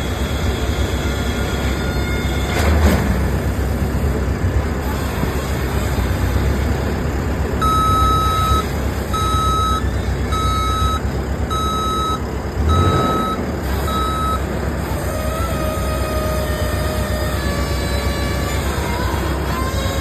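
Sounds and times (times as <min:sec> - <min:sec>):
engine low rumble: 0:00.0 - 0:20.0
vehicle backup alarm beeping: 0:07.6 - 0:17.1.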